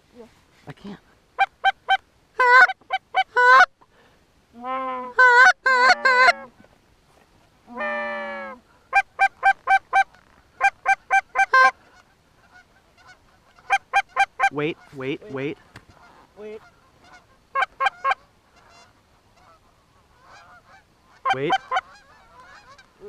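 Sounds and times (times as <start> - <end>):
goose honking and clucking: 1.4 - 3.7, 4.6 - 6.5, 7.7 - 23.0
goose wavering moans: 7.7 - 8.6.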